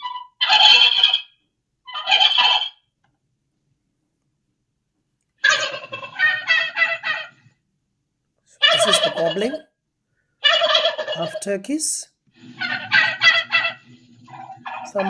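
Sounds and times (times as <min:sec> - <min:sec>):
turkey gobbling: 0:05.4 - 0:07.4, 0:08.6 - 0:09.6.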